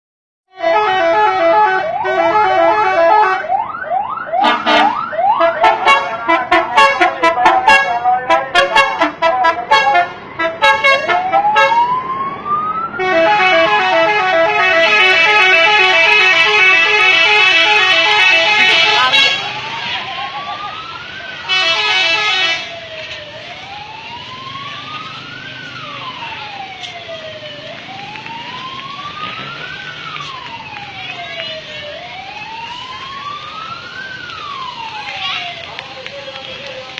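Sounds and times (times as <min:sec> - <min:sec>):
multi-tone musical bus horn: 0:00.5 - 0:03.6, 0:04.4 - 0:12.0, 0:13.0 - 0:20.4, 0:21.4 - 0:22.8
siren wailing: 0:00.8 - 0:35.8.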